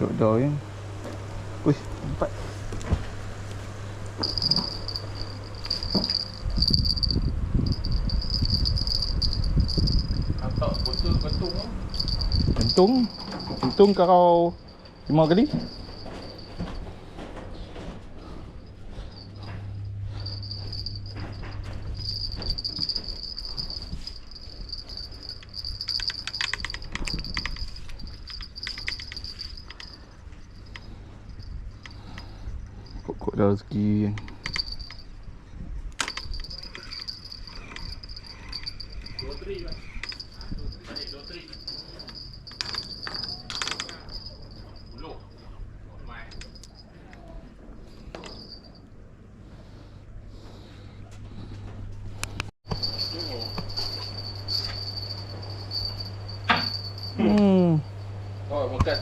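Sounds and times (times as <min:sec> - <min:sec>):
low rumbling noise: 0:00.0 - 0:33.0
insects trilling: 0:04.2 - 0:16.7, 0:36.4 - 0:45.2, 0:52.7 - 0:59.0
insect trilling: 0:36.5 - 0:40.6.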